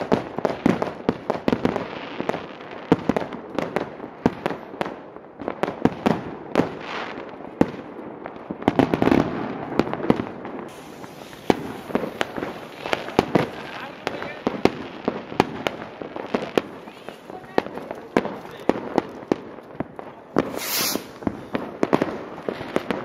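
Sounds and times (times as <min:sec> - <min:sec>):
fireworks crackling: 0:00.0 - 0:23.0
firecracker bangs: 0:08.7 - 0:23.0.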